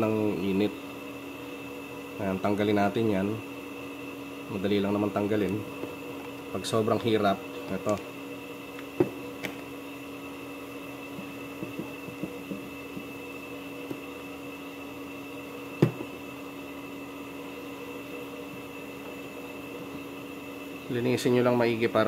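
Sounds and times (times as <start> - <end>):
steady electrical hum: 0.0 - 22.0
heatsink knocking on circuit board: 8.9 - 9.6, 11.1 - 13.1, 15.8 - 16.2.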